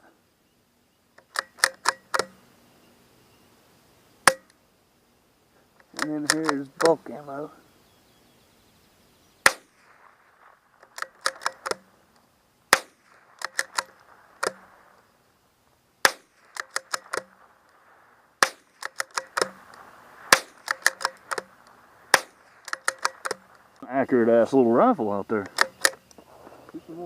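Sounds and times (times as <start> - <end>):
rifle bolt clicks: 1.2 - 2.4, 4.3 - 4.6, 5.8 - 7.0, 10.8 - 11.9, 12.7 - 14.7, 16.0 - 17.8, 18.4 - 23.8, 25.4 - 26.2
rifle shots: 9.4 - 12.0, 12.7 - 15.1, 16.0 - 23.8, 25.4 - 26.0.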